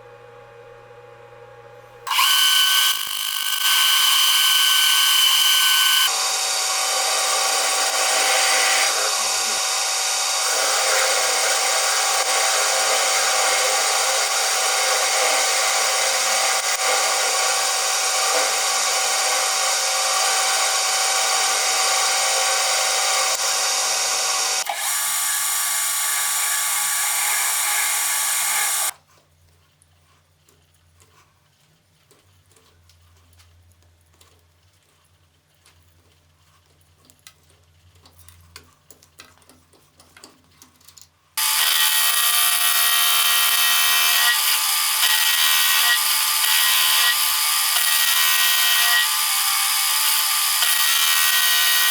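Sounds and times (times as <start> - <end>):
machine tool cutting metal: 2.1 - 28.9, 41.4 - 51.9.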